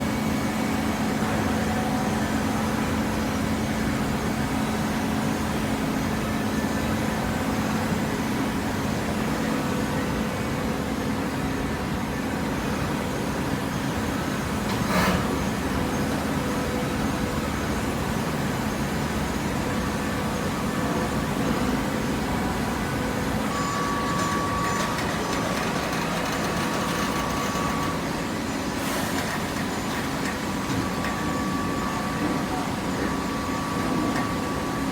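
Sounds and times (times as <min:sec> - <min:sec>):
baler machine humming: 0:13.9 - 0:34.9.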